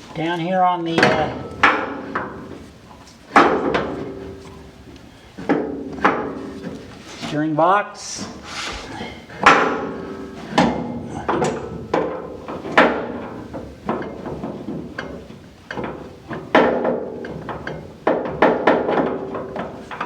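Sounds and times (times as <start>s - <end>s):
metal knocks and clanks: 0.8s - 2.6s, 3.3s - 4.4s, 9.4s - 20.0s.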